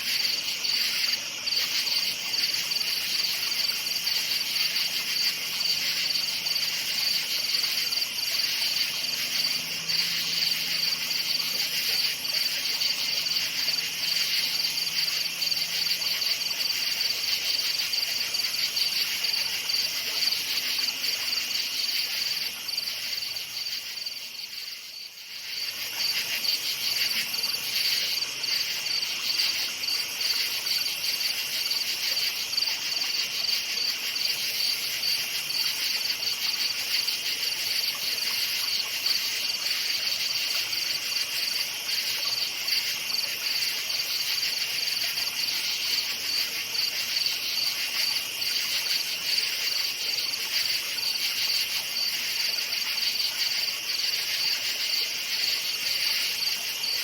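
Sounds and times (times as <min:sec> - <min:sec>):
crickets chirping: 0:00.0 - 0:57.0
lower insect song: 0:00.0 - 0:57.0.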